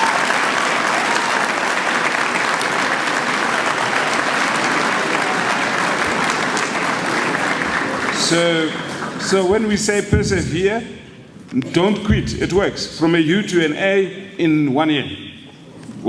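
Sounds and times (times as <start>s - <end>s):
audience applauding: 0.0s - 9.5s.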